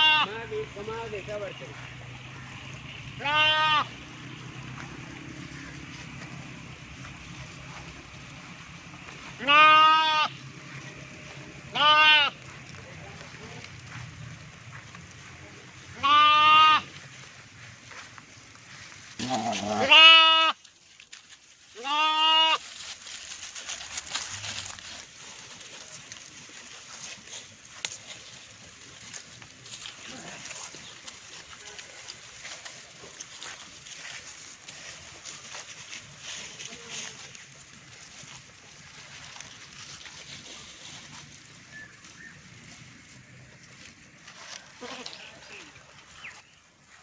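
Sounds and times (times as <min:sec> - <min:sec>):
lamb bleating: 0:00.0 - 0:00.4, 0:03.2 - 0:04.0, 0:09.1 - 0:10.4, 0:11.7 - 0:12.6, 0:15.9 - 0:16.9, 0:19.2 - 0:20.6, 0:21.8 - 0:22.6.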